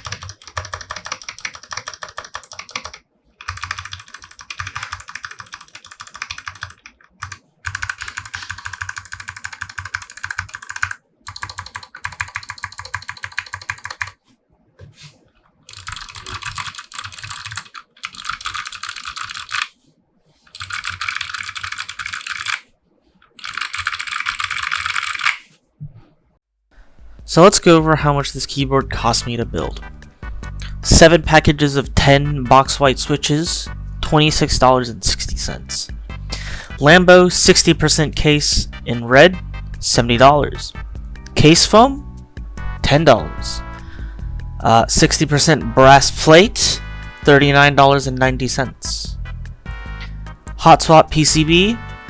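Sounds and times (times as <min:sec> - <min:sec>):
clicky mechanical keyboard typing: 0:00.0 - 0:14.2, 0:15.7 - 0:19.7, 0:20.6 - 0:22.6, 0:23.4 - 0:25.4.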